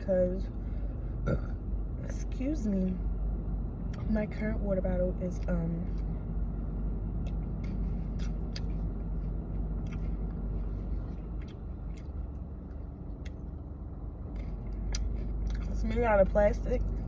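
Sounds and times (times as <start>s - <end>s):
low rumble: 0.0s - 17.0s
crunchy mouth clicks: 7.2s - 9.0s, 9.8s - 10.4s, 11.1s - 13.6s, 14.3s - 15.8s
person chewing food: 7.2s - 15.8s.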